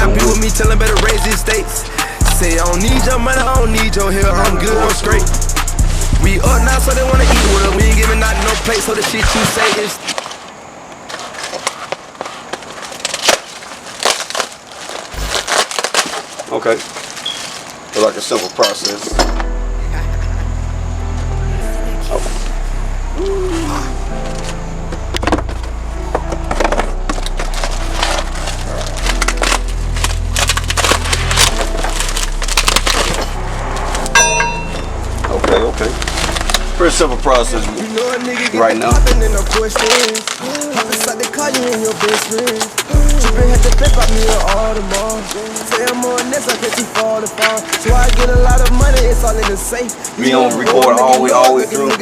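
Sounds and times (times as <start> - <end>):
rap music with deep bass: 0.0 - 10.1, 19.1 - 52.0
light crinkling: 0.0 - 19.4, 23.6 - 52.0
handling crackling and clattering: 6.6 - 19.5, 24.2 - 49.7.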